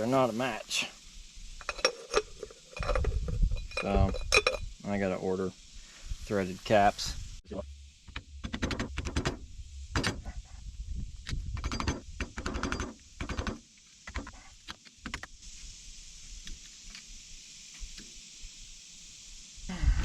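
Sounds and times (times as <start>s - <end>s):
faint hiss: 0.0s - 20.0s
metal parts clanking: 1.6s - 4.7s.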